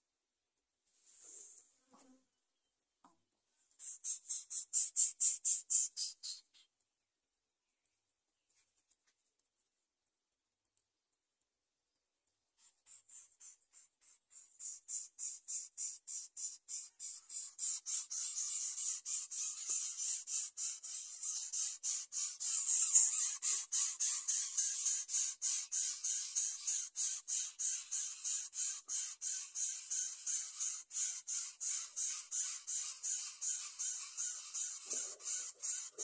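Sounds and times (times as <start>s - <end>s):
chicks hissing begging calls: 13.4s - 36.0s.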